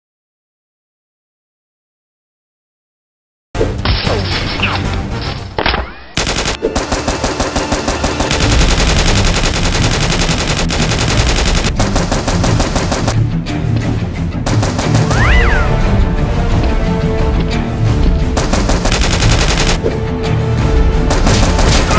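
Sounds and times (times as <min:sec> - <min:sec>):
rapid automatic gunfire: 0:06.2 - 0:13.2, 0:14.4 - 0:15.3, 0:18.4 - 0:19.8, 0:21.1 - 0:21.9.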